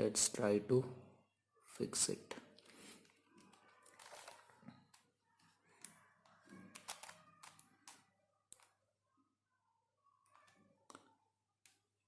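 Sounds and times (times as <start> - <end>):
plastic puzzle layers clicking: 6.6 - 8.8.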